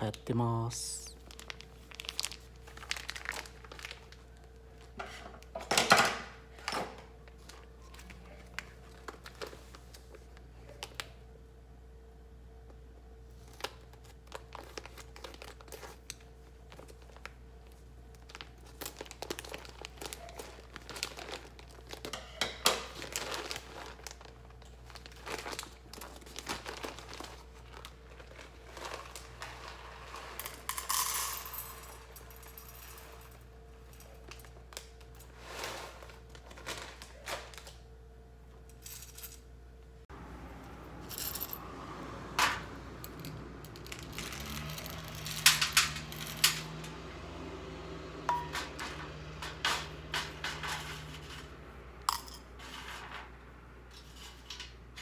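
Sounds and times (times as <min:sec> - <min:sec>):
packaging crinkling: 0:01.2 - 0:04.9, 0:13.5 - 0:22.2, 0:22.8 - 0:30.2.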